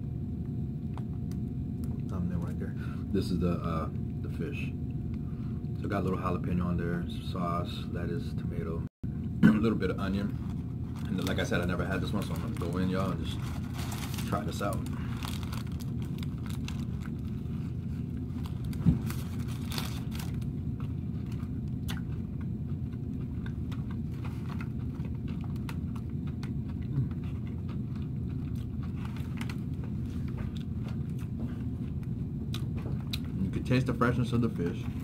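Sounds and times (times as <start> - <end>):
person chewing crispy food: 10.3 - 33.4.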